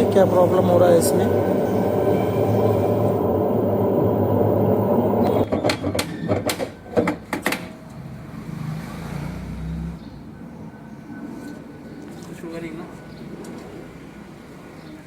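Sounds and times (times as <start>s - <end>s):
faint low hum: 0.0s - 5.5s
washing machine loud noise: 0.0s - 6.0s.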